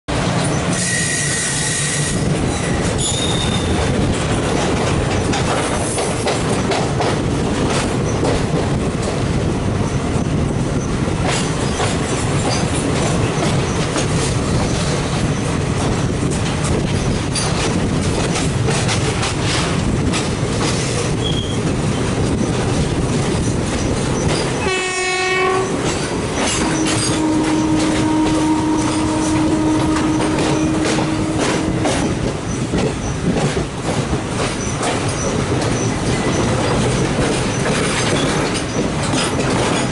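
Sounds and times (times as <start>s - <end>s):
train rumbling on rails: 0.1s - 39.9s
wheel squeals: 0.7s - 3.8s, 21.2s - 21.6s
wheels clacking over rail joints: 2.3s - 39.9s
long steady horn-like tone: 24.6s - 25.8s, 26.6s - 32.0s
locomotive horn blast: 24.6s - 25.9s, 26.6s - 32.2s.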